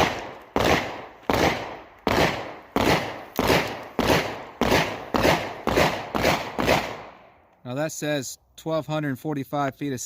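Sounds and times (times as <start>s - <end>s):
loud sharp bangs with ringing: 0.0s - 7.4s.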